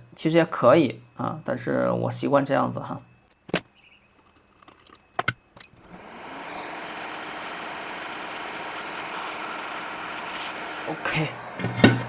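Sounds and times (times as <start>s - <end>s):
hot-air station blowing: 5.8s - 12.0s.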